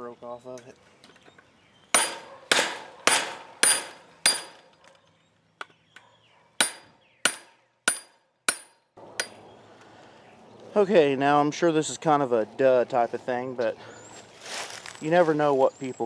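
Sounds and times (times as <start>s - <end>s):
hammer blows on metal: 1.9s - 4.6s.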